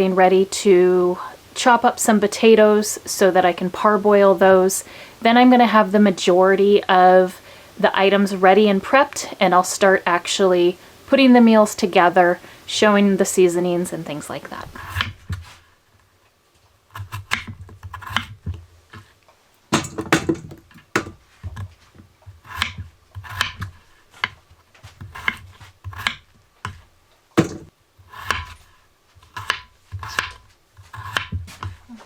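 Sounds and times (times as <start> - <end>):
knife chopping on cutting board: 17.0 - 18.6, 19.7 - 21.7, 22.4 - 24.4, 25.0 - 26.8, 27.4 - 28.6, 29.3 - 31.8.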